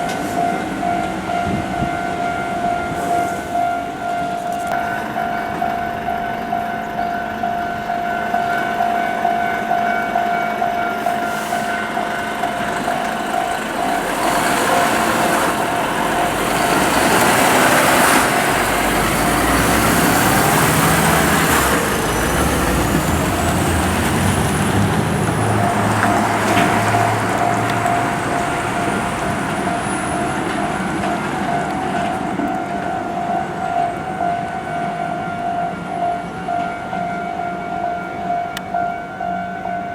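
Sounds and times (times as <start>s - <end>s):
level-crossing warning bell: 0.0s - 39.9s
rushing tyre noise: 11.1s - 32.8s
truck engine rumble: 11.4s - 34.1s.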